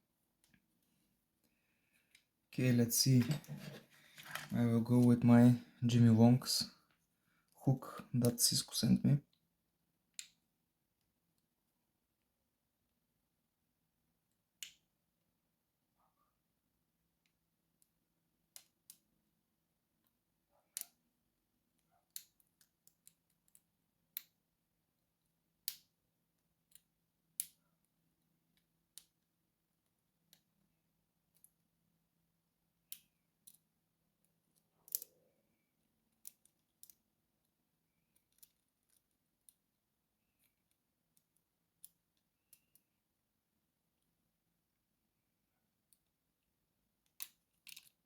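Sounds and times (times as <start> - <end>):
small metal clicks of lock picking: 34.5 - 35.2, 38.2 - 39.6, 47.0 - 48.0.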